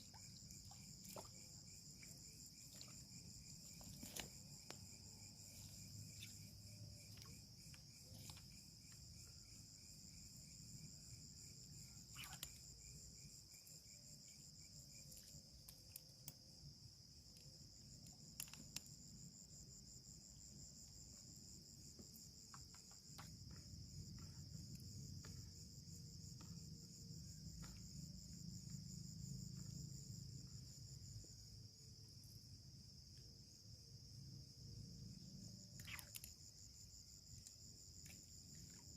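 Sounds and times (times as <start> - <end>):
insects chirring high: 0.0 - 15.4, 34.0 - 38.9
pulsing insect chirr: 0.0 - 38.9.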